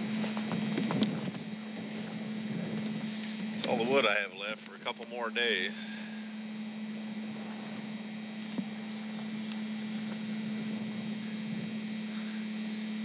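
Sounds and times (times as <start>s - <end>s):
even hiss: 0.0s - 13.0s
steady low hum: 0.0s - 13.0s.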